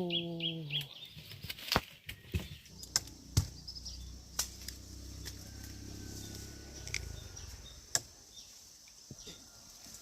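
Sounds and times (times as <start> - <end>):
low steady rumble: 2.7 - 8.4.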